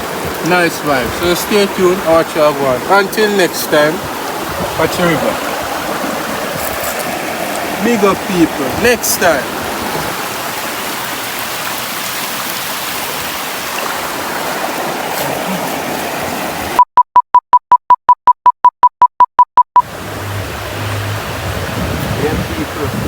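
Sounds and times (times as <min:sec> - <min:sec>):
river water rushing: 0:00.0 - 0:16.8, 0:19.8 - 0:23.0
short electronic beeps: 0:16.9 - 0:19.8.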